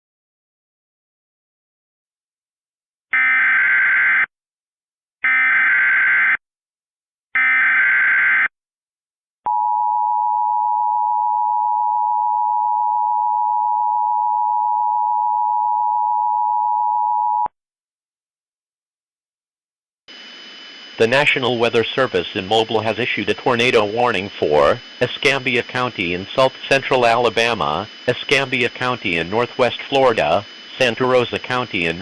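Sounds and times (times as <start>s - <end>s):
digital data tone bursts: 20.1s - 32.0s.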